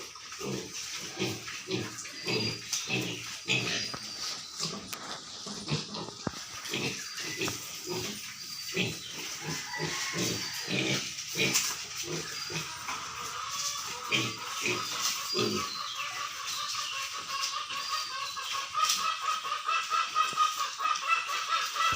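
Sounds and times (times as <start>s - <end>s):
piglets grunting: 0.0s - 5.0s, 5.6s - 16.0s
high-pitched animal calls: 1.1s - 21.9s.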